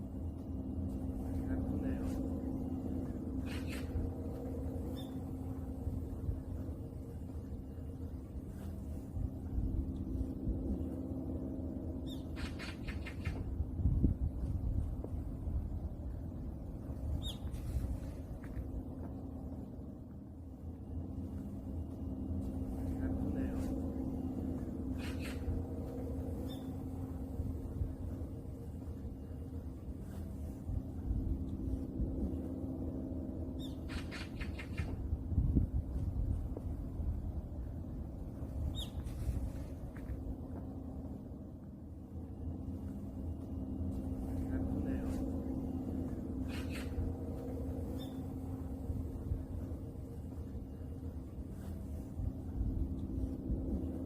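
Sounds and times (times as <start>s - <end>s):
droning hum: 0.0s - 54.0s
low outdoor rumble: 0.0s - 54.0s
faint bird calls: 0.9s - 9.0s, 11.9s - 13.5s, 17.1s - 18.2s, 22.4s - 27.4s, 33.4s - 35.0s, 38.6s - 39.7s, 44.0s - 48.8s
high bird chirp: 38.7s - 39.1s.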